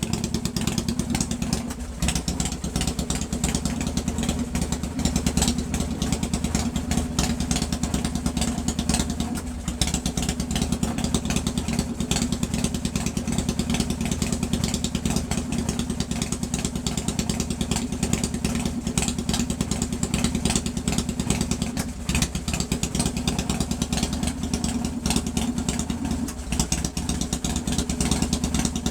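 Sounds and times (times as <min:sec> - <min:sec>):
motorcycle engine running: 0:00.0 - 0:28.9.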